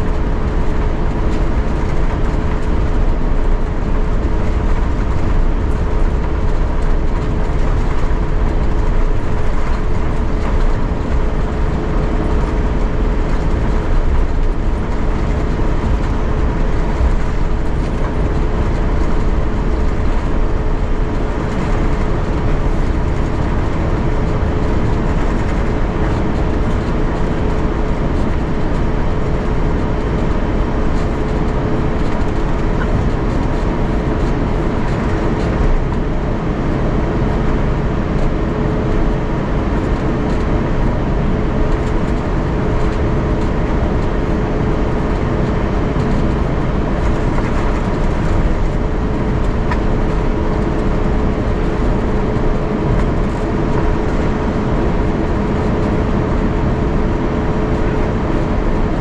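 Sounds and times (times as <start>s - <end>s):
low rumble of rolling aircraft: 0.0s - 59.0s
steady hum: 0.0s - 59.0s.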